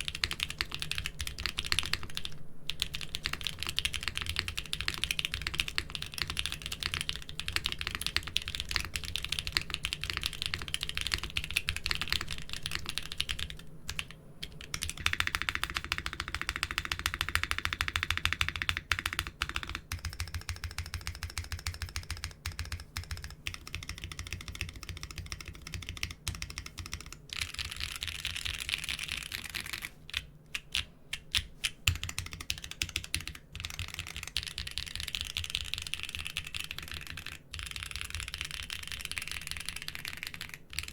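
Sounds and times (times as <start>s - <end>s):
low steady hum: 0.0s - 40.9s
mechanical keyboard typing: 0.0s - 40.9s.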